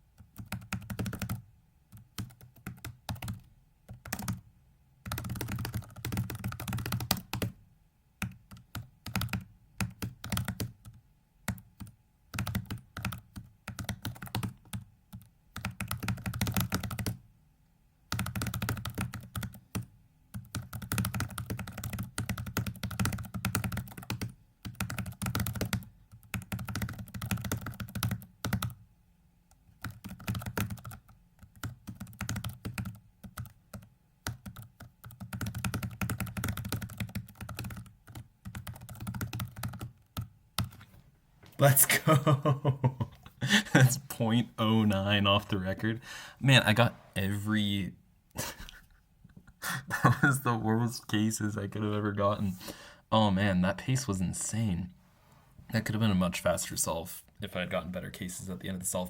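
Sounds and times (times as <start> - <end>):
fast keyboard typing: 0.2 - 1.4, 2.0 - 4.4, 5.0 - 7.6, 8.2 - 17.2, 18.1 - 28.8, 29.7 - 40.9.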